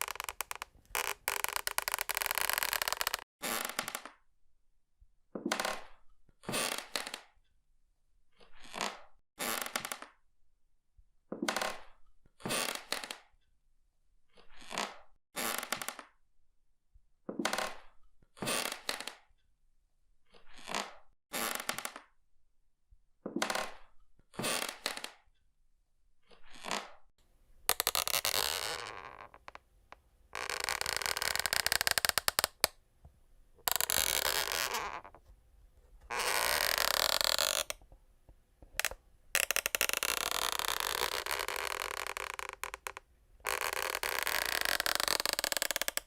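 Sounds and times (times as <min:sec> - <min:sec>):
wooden floor creaking: 0:00.0 - 0:04.0, 0:27.7 - 0:29.6, 0:30.4 - 0:32.8, 0:33.6 - 0:37.9, 0:38.6 - 0:46.0.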